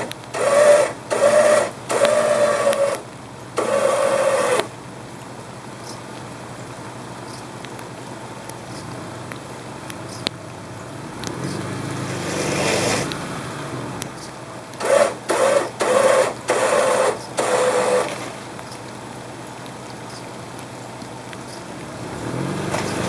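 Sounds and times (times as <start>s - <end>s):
electric winch whining: 0.0s - 4.8s, 11.6s - 14.0s, 14.7s - 18.7s
car engine idling: 0.0s - 23.0s.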